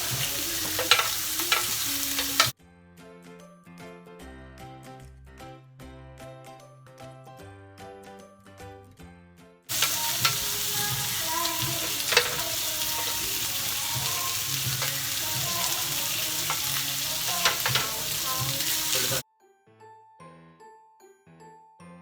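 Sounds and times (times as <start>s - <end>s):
meat sizzling on a grill: 0.0s - 2.6s, 9.7s - 19.2s
background music: 0.0s - 22.0s.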